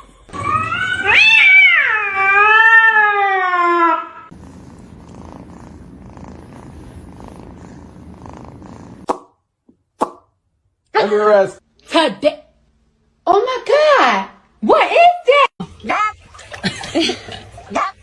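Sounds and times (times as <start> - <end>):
cat meowing: 0.3 - 4.3.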